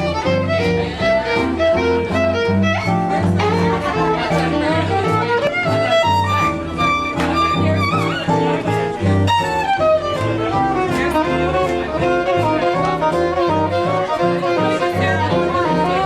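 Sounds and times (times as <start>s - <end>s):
instrumental rhythm and blues music: 0.0s - 16.0s.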